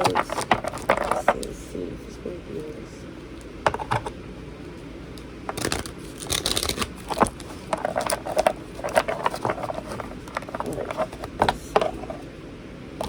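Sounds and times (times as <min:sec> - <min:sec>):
cards being shuffled: 0:00.0 - 0:01.5, 0:05.5 - 0:12.3.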